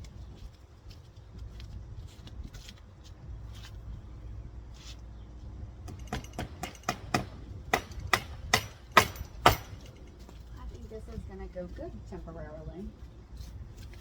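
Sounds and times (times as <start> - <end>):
sharp knocks: 5.9 - 10.0.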